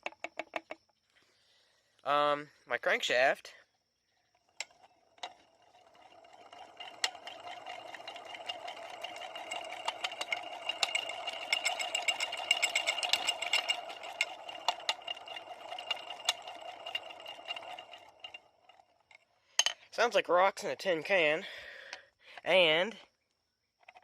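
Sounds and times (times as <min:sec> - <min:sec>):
crankshaft bearings grinding rattle: 0:04.2 - 0:20.1.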